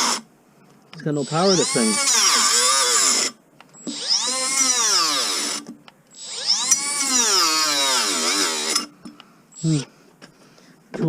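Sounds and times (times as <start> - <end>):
cordless cutting tool motor whine: 0.0 - 0.2, 1.2 - 8.9.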